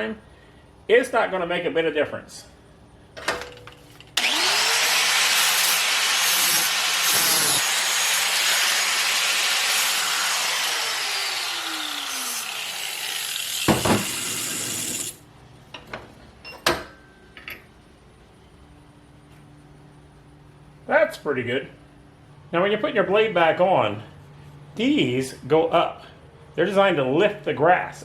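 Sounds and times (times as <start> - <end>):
grinder grinding steel: 4.2 - 15.2.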